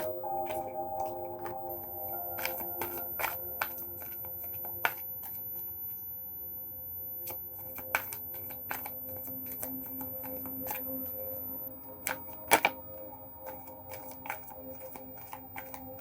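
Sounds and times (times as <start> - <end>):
cards clicking and snapping: 0.0 - 5.4, 7.3 - 10.9, 13.5 - 16.0
soft background music: 0.0 - 5.8, 6.8 - 16.0.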